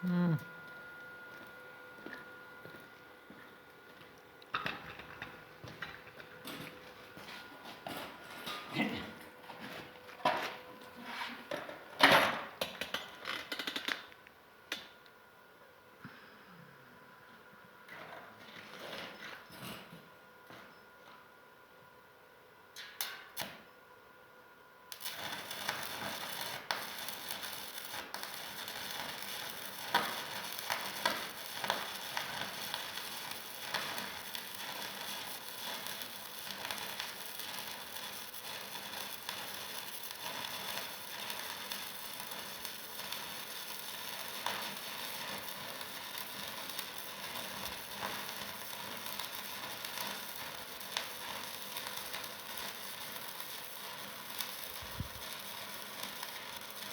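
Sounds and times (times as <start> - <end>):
welding arc crackling sizzle: 1.3 - 11.4, 12.3 - 15.0, 24.9 - 56.9
welding arc pops: 24.9 - 56.9.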